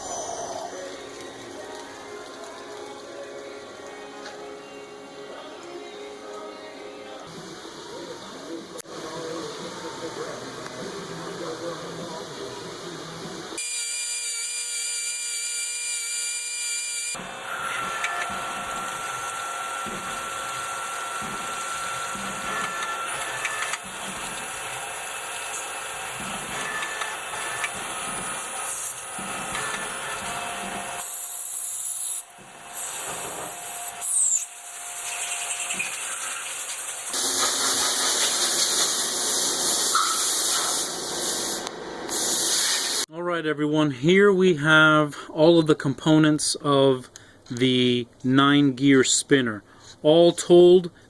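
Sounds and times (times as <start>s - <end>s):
power tool whining cutting metal: 13.6s - 38.4s
loud hiss: 18.2s - 43.1s.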